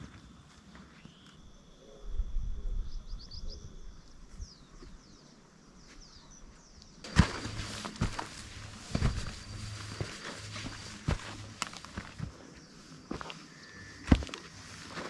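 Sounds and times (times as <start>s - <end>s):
small birds chirping: 1.0s - 7.1s
low rumble: 1.4s - 5.0s.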